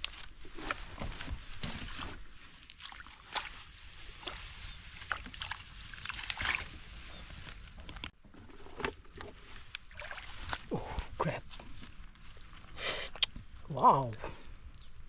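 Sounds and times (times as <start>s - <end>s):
sloshing in wet mud: 0.0s - 7.2s, 8.2s - 12.8s.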